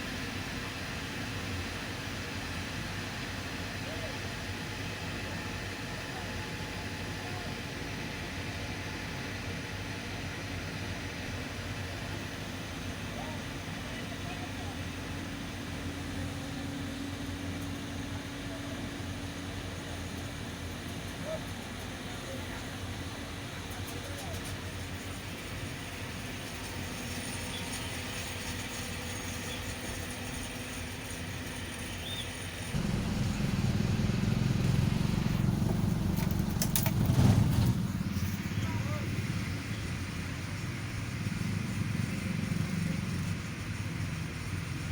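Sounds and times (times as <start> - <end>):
diesel engine running: 24.3 - 44.9.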